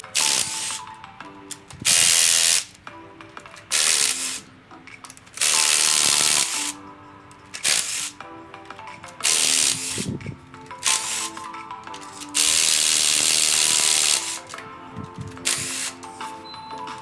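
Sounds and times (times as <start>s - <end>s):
background music: 0.0s - 17.0s
pneumatic ratchet hissing and spinning: 0.2s - 0.9s, 1.8s - 2.8s, 3.7s - 4.5s, 5.2s - 6.8s, 7.6s - 8.2s, 9.2s - 10.2s, 10.8s - 14.6s, 15.3s - 16.4s.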